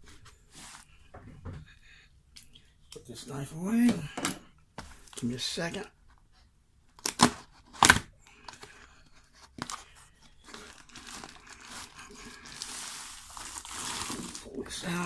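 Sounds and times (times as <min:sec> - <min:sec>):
packing material crinkling and tearing: 0:07.0 - 0:08.1, 0:09.4 - 0:15.0.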